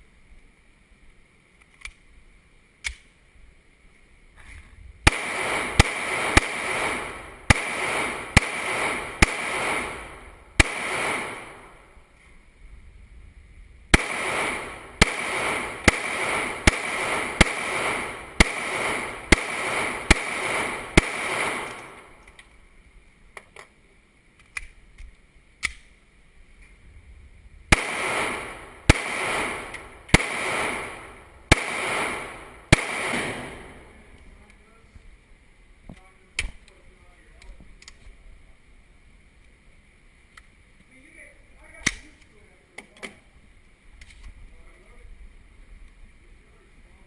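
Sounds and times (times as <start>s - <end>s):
faint clicks: 1.5s - 2.1s, 24.3s - 25.9s, 35.9s - 38.2s, 40.3s - 40.9s
gunshots echoing: 5.1s - 11.9s, 13.9s - 22.2s, 27.7s - 34.1s.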